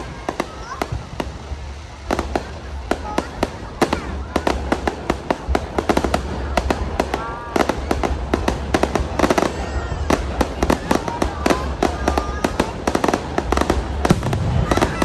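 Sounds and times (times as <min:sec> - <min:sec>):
fireworks cracking and banging: 0:00.0 - 0:15.0.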